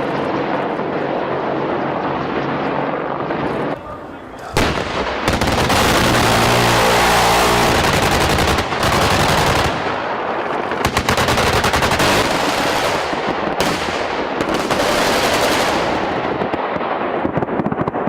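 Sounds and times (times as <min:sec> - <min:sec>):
rumble of gunfire: 0:00.0 - 0:18.0
machine-gun shots: 0:04.6 - 0:16.6.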